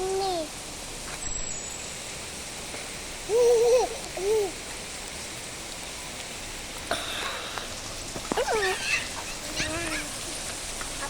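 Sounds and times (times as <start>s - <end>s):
steady rain falling: 0.0s - 11.0s
high wavering vocal calls: 3.3s - 4.6s, 8.4s - 10.4s.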